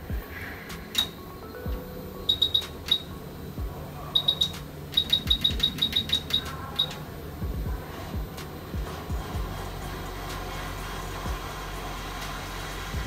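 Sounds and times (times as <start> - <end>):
high-pitched electronic beeps: 0.0 - 9.8
dull low knocks: 7.4 - 9.6.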